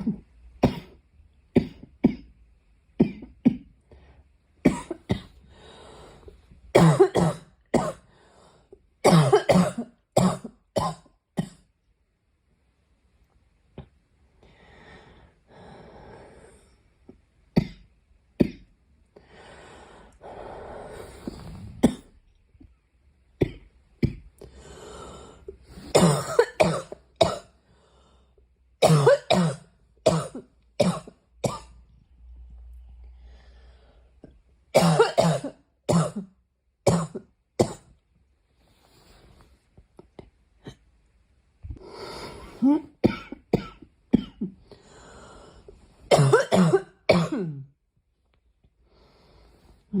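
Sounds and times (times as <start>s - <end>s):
girl coughing: 0.0s - 1.0s, 4.7s - 5.4s, 6.8s - 8.0s, 9.0s - 11.6s, 25.9s - 27.5s, 28.8s - 31.7s, 34.8s - 36.3s, 42.6s - 44.6s, 46.1s - 47.7s
soft breaths: 5.3s - 6.7s, 8.1s - 8.9s, 14.2s - 17.3s, 19.1s - 22.1s, 24.3s - 26.0s, 27.6s - 28.7s, 32.3s - 34.5s, 38.4s - 40.6s, 44.6s - 46.1s, 48.2s - 50.0s.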